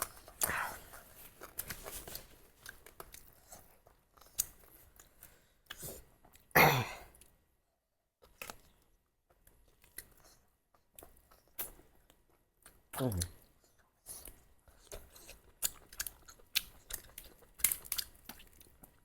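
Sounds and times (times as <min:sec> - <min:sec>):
chewing with mouth clicks: 0:00.0 - 0:06.5, 0:08.2 - 0:19.0.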